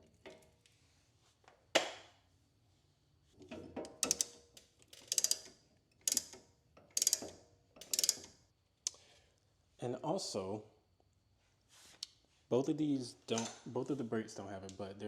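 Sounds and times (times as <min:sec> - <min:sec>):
sharp metal click: 0:04.0 - 0:04.3, 0:07.0 - 0:08.4.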